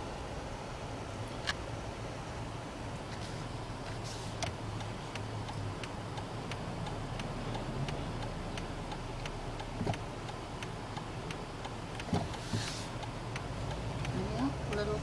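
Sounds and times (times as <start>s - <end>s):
idling engine hum: 0.0s - 15.0s
turn-signal indicator ticking: 4.4s - 15.0s.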